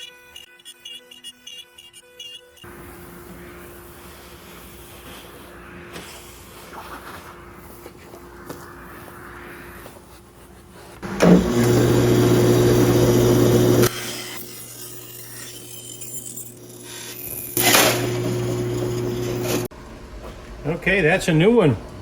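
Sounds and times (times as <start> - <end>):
steady motor hum: 11.0 - 14.4, 17.5 - 20.6
power saw cutting wood: 11.0 - 19.7.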